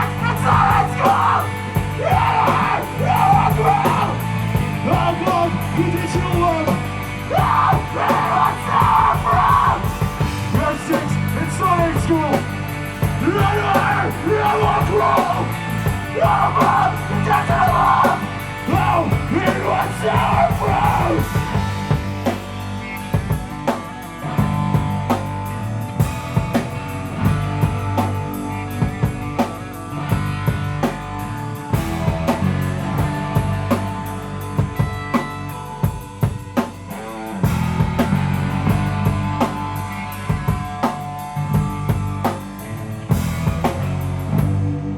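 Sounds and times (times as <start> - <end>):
bass guitar: 0.0 - 44.9
distorted electric guitars: 0.0 - 44.9
drums: 0.0 - 44.9
person singing: 13.2 - 21.6.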